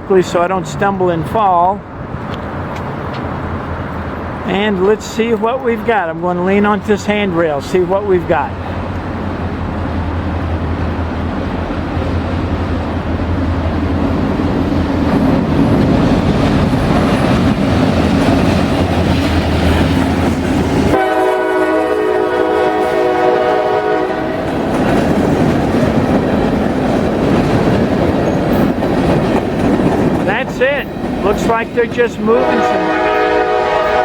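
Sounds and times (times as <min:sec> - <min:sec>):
locomotive engine rumble: 0:00.0 - 0:34.0
train wheels clattering on rails: 0:10.4 - 0:21.0, 0:24.1 - 0:32.7
locomotive air horn blast: 0:20.9 - 0:24.5, 0:32.3 - 0:34.0.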